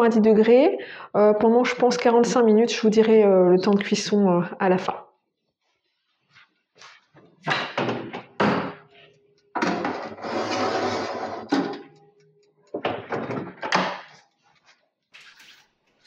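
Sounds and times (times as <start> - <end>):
oven door knocks and clatter: 12.8 - 14.1.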